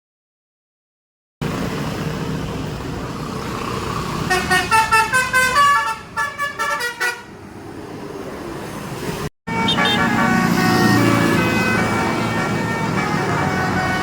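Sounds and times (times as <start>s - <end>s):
bus engine running: 1.4s - 14.0s
multi-tone bus horn tune: 4.2s - 7.4s, 9.5s - 14.0s.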